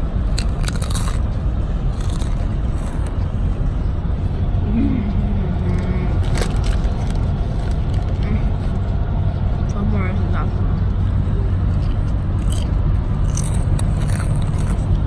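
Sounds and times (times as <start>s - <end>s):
car engine and road rumble: 0.0s - 15.0s
chewing potato chips: 0.3s - 3.2s, 6.2s - 8.2s, 11.7s - 15.0s.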